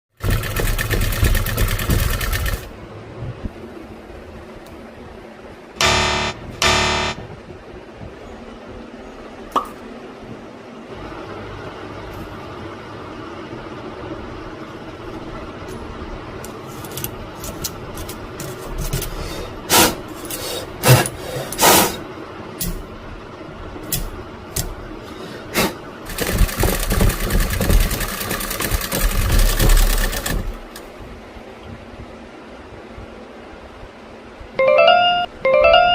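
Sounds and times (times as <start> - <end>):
sewing machine clicks and knocks: 0.1 - 2.7, 26.1 - 30.9
sewing machine running fast: 0.1 - 2.8, 26.0 - 30.8.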